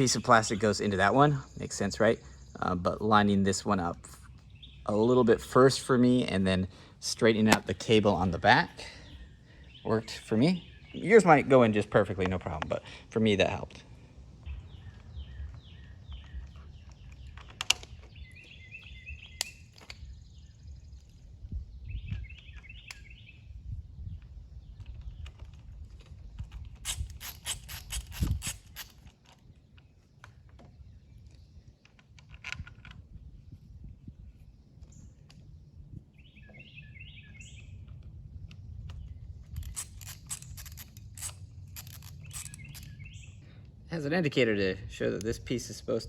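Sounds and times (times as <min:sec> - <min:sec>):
birds chirping: 0:00.0 - 0:32.4, 0:33.0 - 0:46.0
small parts and tools clicking: 0:24.8 - 0:29.4, 0:38.0 - 0:43.0.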